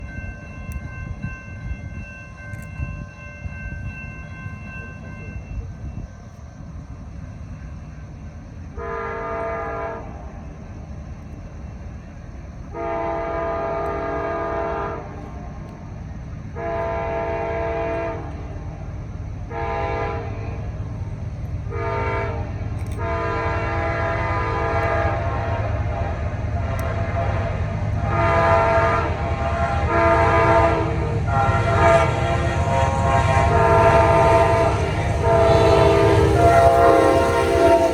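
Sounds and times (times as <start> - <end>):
approaching train rumble: 0.0 - 37.9
locomotive air horn blasts: 8.8 - 10.1, 12.7 - 15.2, 16.6 - 18.4, 19.5 - 20.6, 21.7 - 25.7, 26.8 - 37.9.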